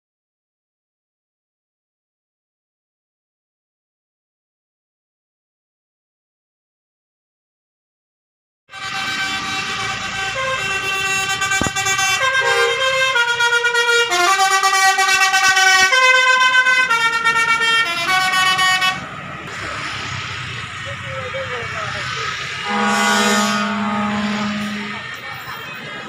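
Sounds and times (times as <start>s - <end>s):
multi-tone musical bus horn: 8.7s - 19.1s, 22.6s - 26.0s.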